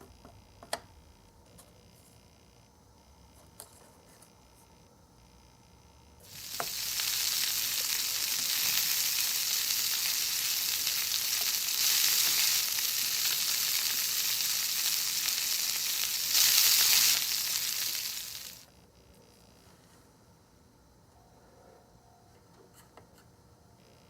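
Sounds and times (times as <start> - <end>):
steady high hiss: 6.2 - 18.7.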